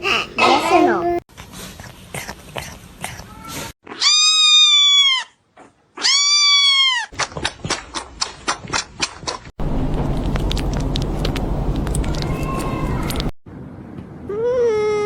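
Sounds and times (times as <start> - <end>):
noisy background with low hum: 9.6 - 14.5
kitten meowing: 12.0 - 13.3.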